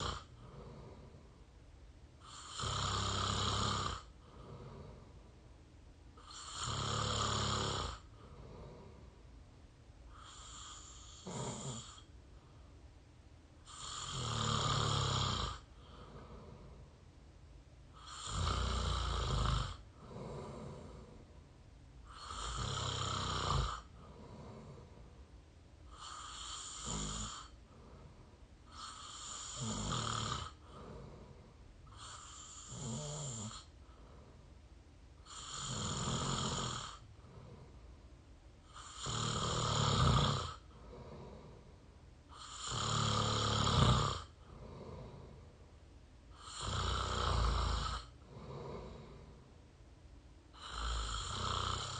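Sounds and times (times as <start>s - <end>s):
person snoring loudly: 0.0s - 1.2s, 2.2s - 5.0s, 6.2s - 8.9s, 10.1s - 12.0s, 13.7s - 16.6s, 18.0s - 21.1s, 22.1s - 24.9s, 25.9s - 27.6s, 28.7s - 33.7s, 35.2s - 37.4s, 38.7s - 41.6s, 42.3s - 45.4s, 46.4s - 49.3s, 50.6s - 51.9s
faint breaths: 0.0s - 51.9s.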